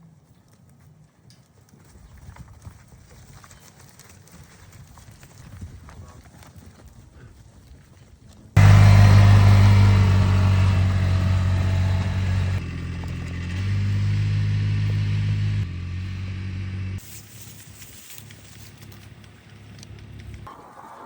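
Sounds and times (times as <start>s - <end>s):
vehicle engine running: 8.6s - 20.5s.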